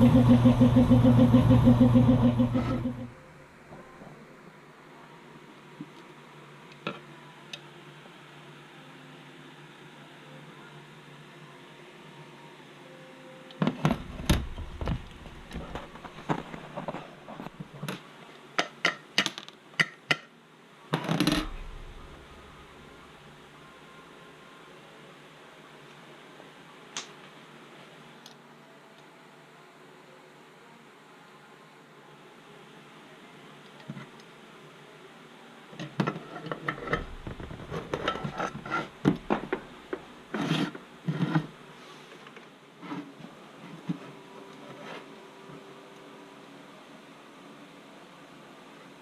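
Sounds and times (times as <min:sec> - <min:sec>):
metal scraping: 0:00.0 - 0:03.2.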